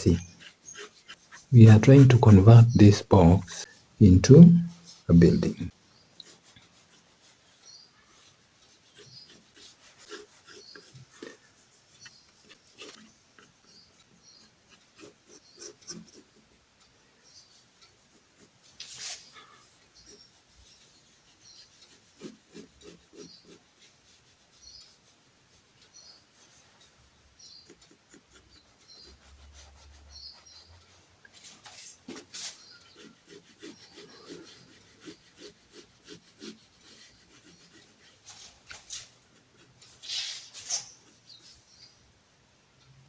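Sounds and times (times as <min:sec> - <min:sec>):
pencil tapping: 0:00.0 - 0:07.0
pencil scraping paper: 0:00.0 - 0:16.6, 0:17.2 - 0:41.9
pencil strokes on paper: 0:00.0 - 0:42.0.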